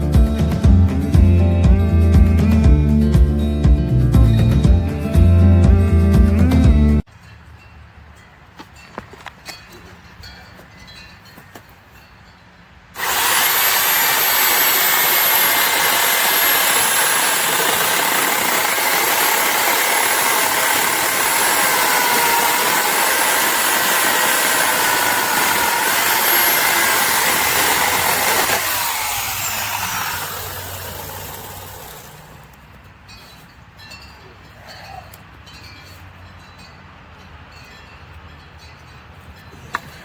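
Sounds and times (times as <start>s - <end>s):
electric chainsaw running: 13.0s - 32.6s.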